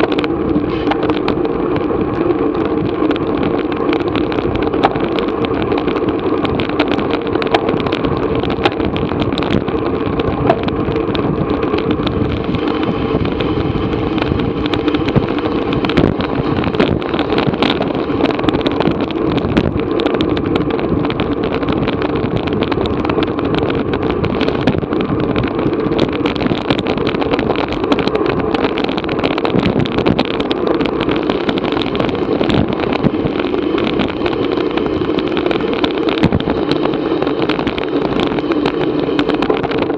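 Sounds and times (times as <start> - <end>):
wind and road noise rushing: 0.0 - 39.9
small clicks and knocks: 2.1 - 12.8.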